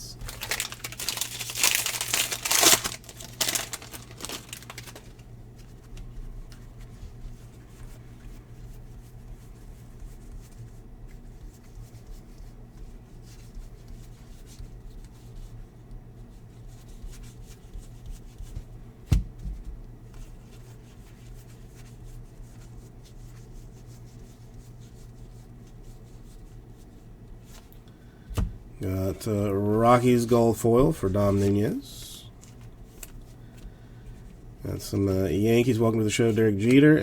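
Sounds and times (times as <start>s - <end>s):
steady low hum: 0.0s - 13.9s, 18.6s - 37.0s
cards rustling and ticking: 0.1s - 6.9s, 29.8s - 37.0s.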